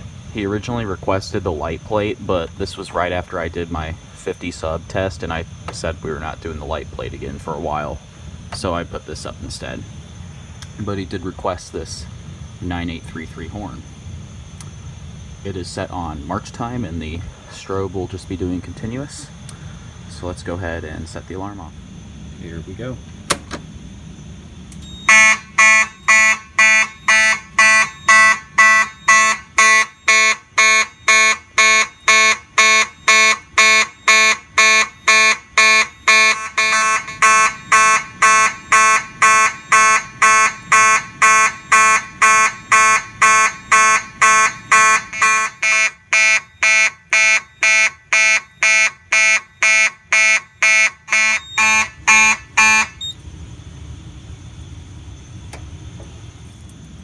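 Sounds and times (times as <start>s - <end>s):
fire alarm horn blasts: 24.8s - 53.2s.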